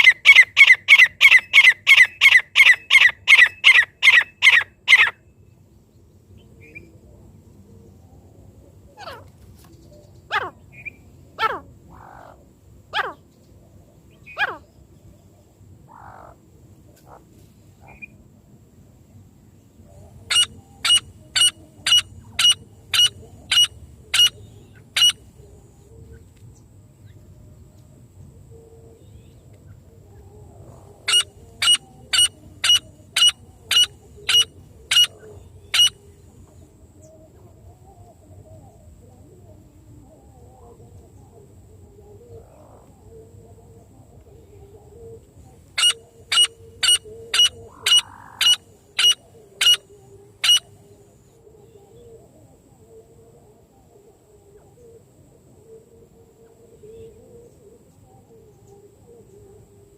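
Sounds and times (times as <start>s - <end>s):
francolin calling: 0.0s - 5.2s, 19.9s - 26.2s, 29.0s - 37.4s, 44.4s - 52.2s.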